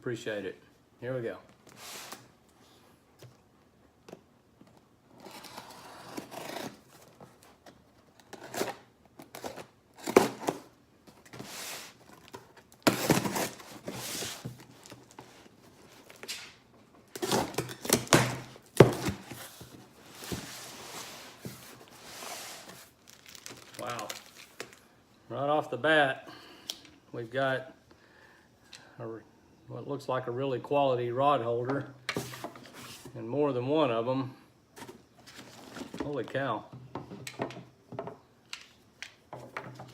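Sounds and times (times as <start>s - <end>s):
tape and cardboard tearing: 5.1s - 7.5s, 8.1s - 15.2s, 16.0s - 19.6s.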